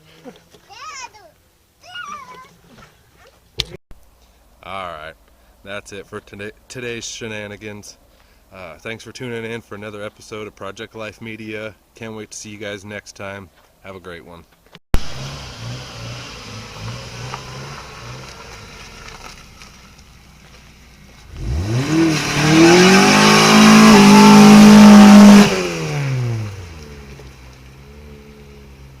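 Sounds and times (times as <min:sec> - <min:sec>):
car engine idling and revving: 0:15.0 - 0:29.0.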